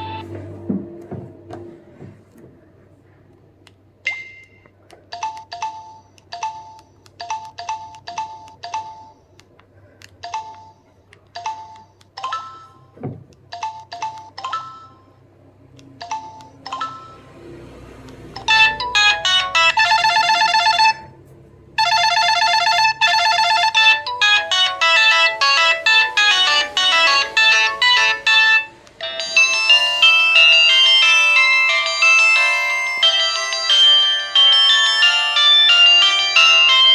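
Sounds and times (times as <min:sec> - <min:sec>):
polyphonic ringtone melody: 0:00.0 - 0:00.3, 0:05.2 - 0:09.3, 0:10.3 - 0:13.0, 0:16.0 - 0:17.3, 0:18.4 - 0:21.2, 0:21.8 - 0:36.9.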